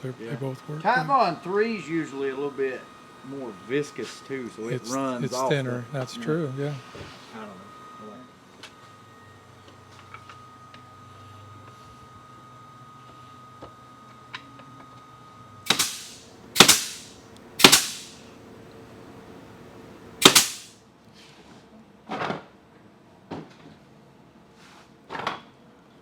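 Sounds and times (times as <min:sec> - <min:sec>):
staple gun firing: 0:15.7 - 0:18.2, 0:20.2 - 0:20.7.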